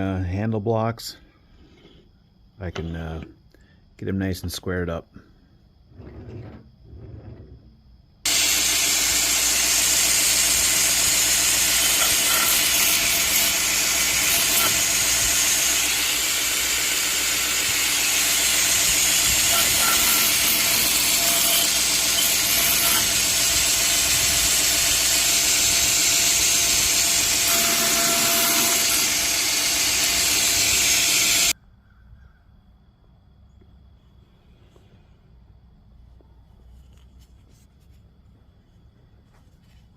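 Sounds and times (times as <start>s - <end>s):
belt grinder grinding wood: 8.3s - 31.6s.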